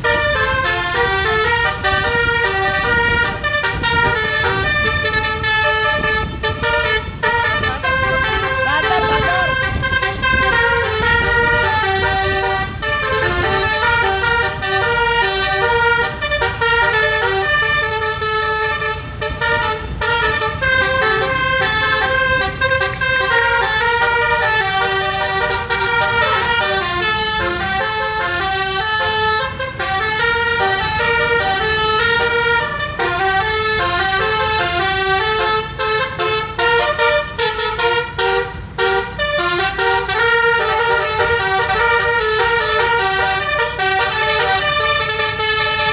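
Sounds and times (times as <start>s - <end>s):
musical bus horn playing tune: 0.0s - 45.9s.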